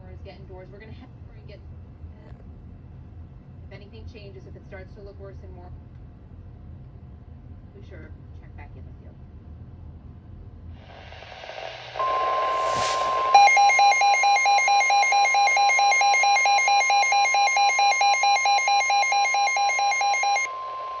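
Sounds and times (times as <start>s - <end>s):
hiss: 10.8s - 13.4s
pulsing alert tone: 12.0s - 21.0s
steady high alert tone: 12.0s - 21.0s.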